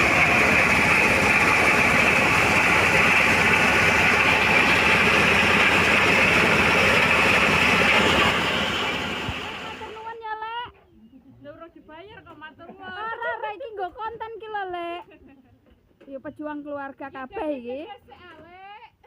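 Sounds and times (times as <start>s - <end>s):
corn sheller engine running: 0.0s - 10.2s.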